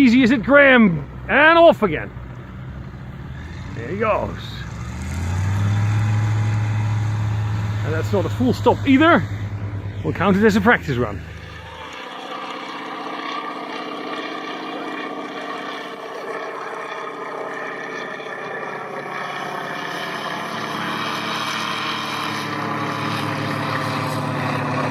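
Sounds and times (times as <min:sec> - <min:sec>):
propeller aircraft engine running: 0:00.0 - 0:24.9.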